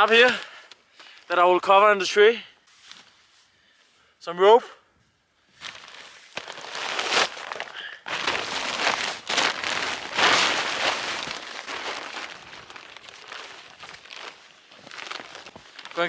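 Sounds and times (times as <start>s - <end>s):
tarp rustling and crackling: 5.5s - 16.0s.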